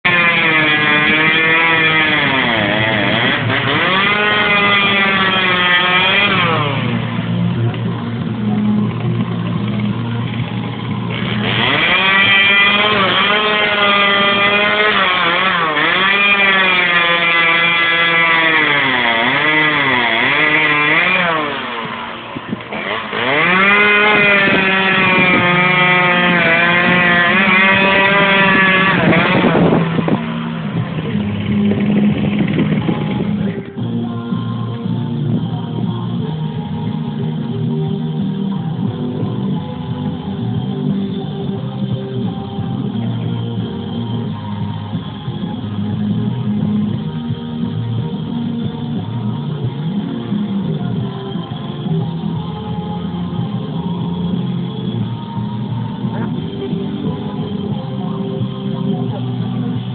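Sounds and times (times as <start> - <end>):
chainsaw carving wood: 0.0 - 34.9.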